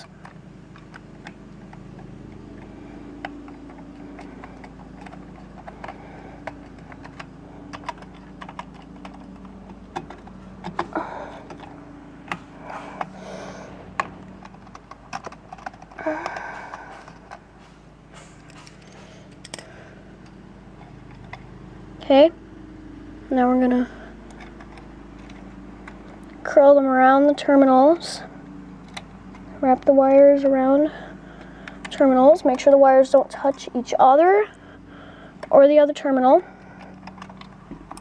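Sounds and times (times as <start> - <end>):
wires being handled: 0.0 - 21.5, 23.9 - 26.5.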